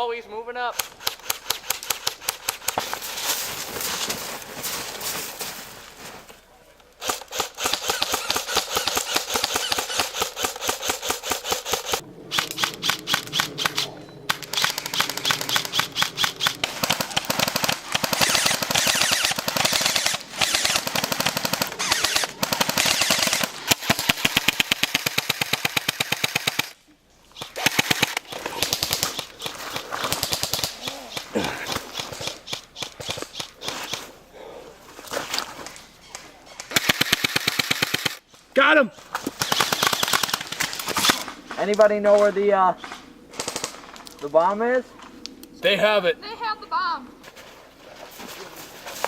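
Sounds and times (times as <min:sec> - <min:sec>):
airsoft guns full-auto firing: 0:00.7 - 0:03.0, 0:07.0 - 0:26.8, 0:27.4 - 0:34.1, 0:36.7 - 0:38.2, 0:39.2 - 0:41.3, 0:43.3 - 0:43.8.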